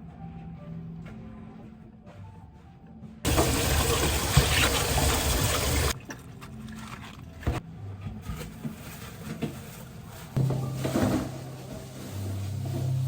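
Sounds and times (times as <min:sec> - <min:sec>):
tap water running: 0:03.3 - 0:07.6.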